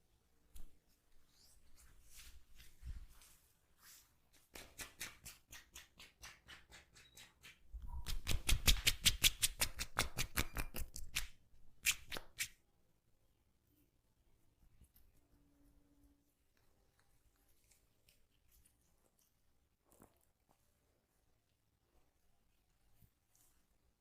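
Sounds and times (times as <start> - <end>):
hands tapping in massage: 4.5 - 11.3.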